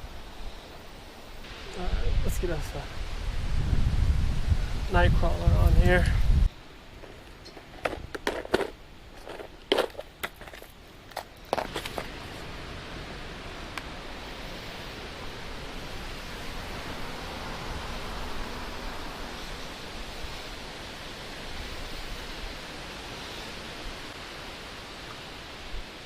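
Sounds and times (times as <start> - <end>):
creek water flowing: 6.5 - 26.0.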